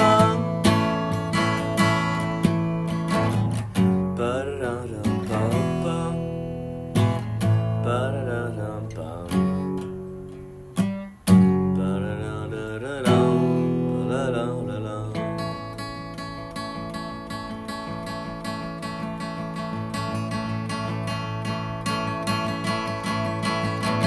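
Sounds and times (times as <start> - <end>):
acoustic guitar strumming: 0.0 - 24.0.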